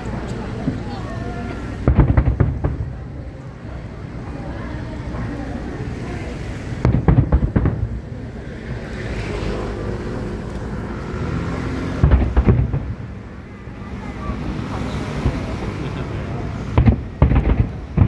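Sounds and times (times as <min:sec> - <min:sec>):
low background rumble: 0:00.0 - 0:08.9, 0:11.7 - 0:18.0
fireworks bangs: 0:01.6 - 0:03.9, 0:06.1 - 0:08.9, 0:11.2 - 0:18.0.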